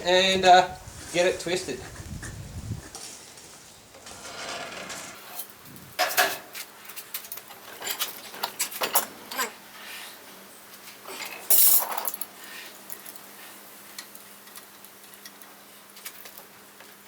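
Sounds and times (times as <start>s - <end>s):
steel rebar clanking and scraping: 4.0s - 6.5s.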